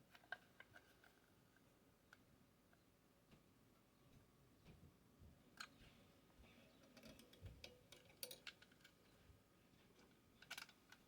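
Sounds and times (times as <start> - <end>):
plastic parts clicking: 6.8 - 9.0, 10.0 - 11.0.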